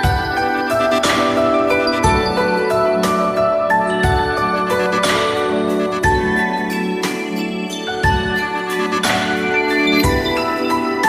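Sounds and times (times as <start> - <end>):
bright tune over steady bass: 0.4 - 6.6.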